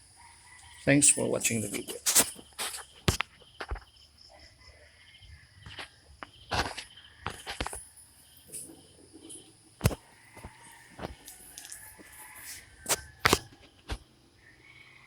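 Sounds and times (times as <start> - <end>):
crickets chirping: 0.0 - 15.0.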